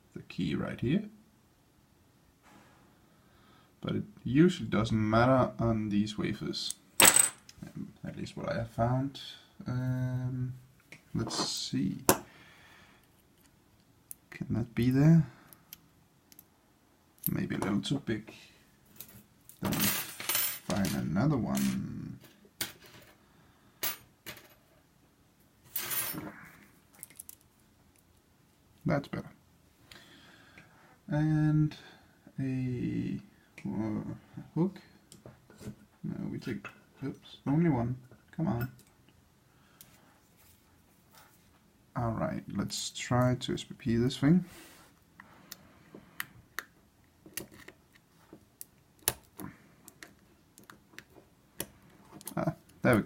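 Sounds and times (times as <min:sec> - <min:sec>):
metal lock-picking tools clinking: 0:27.0 - 0:27.4.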